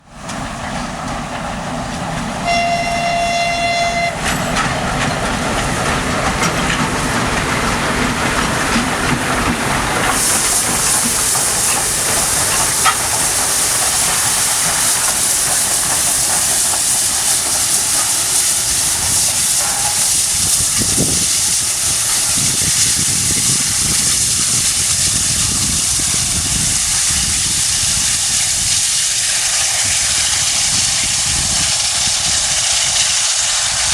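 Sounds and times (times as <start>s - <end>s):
locomotive rumble: 0.0s - 33.9s
steam hissing: 0.0s - 33.9s
steam whistle blast: 2.4s - 4.4s.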